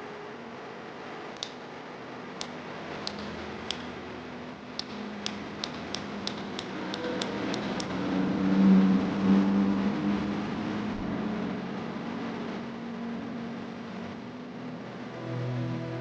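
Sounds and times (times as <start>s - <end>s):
sharp clicks: 1.4s - 1.6s, 2.4s - 4.0s, 4.7s - 8.0s.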